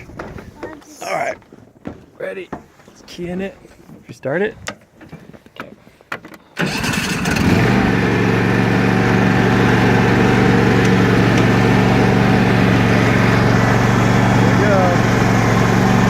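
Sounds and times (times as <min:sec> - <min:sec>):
lawn mower engine idling: 0:06.6 - 0:16.0
lawn mower engine starting: 0:06.6 - 0:16.0.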